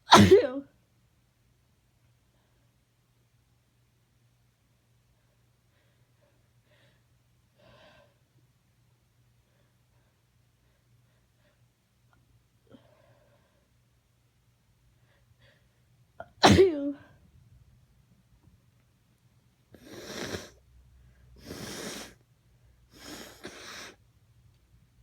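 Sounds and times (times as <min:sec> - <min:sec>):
person sneezing loudly: 0:00.1 - 0:00.6, 0:16.4 - 0:17.0
noisy nose blowing: 0:19.8 - 0:20.6, 0:21.4 - 0:22.2, 0:22.9 - 0:24.0.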